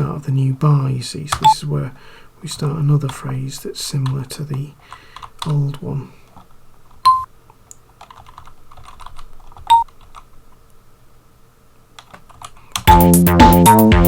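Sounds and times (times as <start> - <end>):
computer keyboard typing: 8.0 - 10.3, 12.0 - 13.0
tracker music with beat and melody: 12.9 - 14.0.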